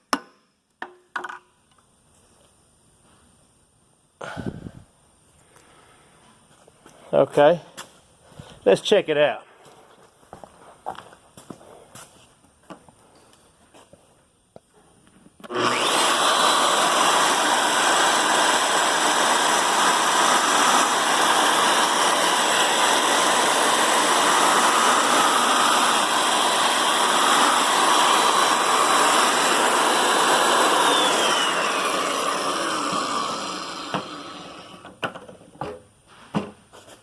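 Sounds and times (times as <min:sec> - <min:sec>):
drill motor whine: 0:15.4 - 0:34.9.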